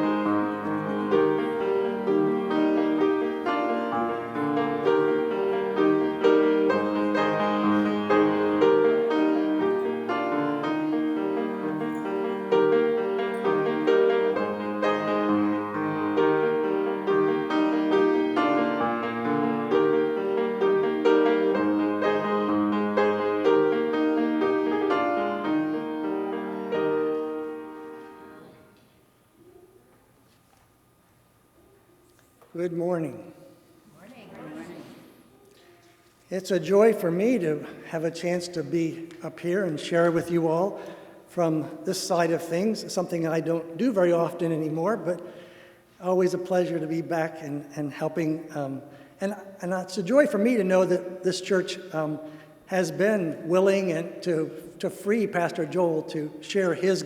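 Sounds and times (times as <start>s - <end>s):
slow piano piece: 0.0s - 30.2s.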